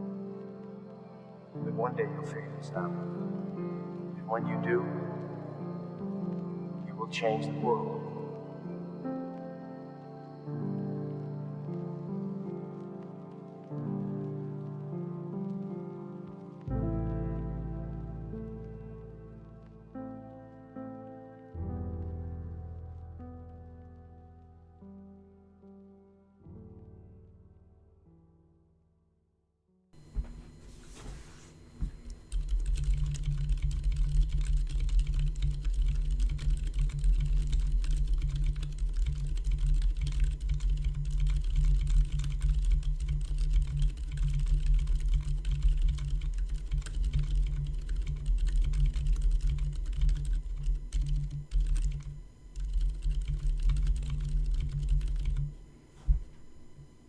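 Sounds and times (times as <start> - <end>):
typing on mechanical keyboard: 31.7 - 57.0.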